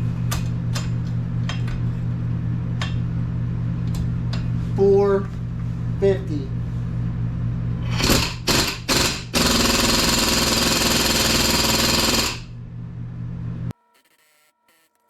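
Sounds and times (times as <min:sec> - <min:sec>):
steady low hum: 0:00.0 - 0:13.8
pneumatic air tool: 0:07.9 - 0:12.4.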